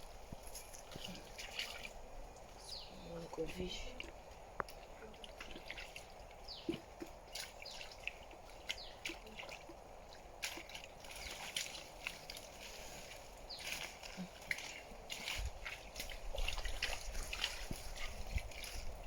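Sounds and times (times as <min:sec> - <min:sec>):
hands splashing in shallow water: 0:04.6 - 0:19.0.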